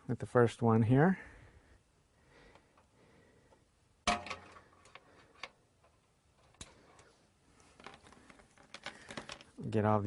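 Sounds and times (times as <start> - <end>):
cable handling ticks: 4.8 - 9.6.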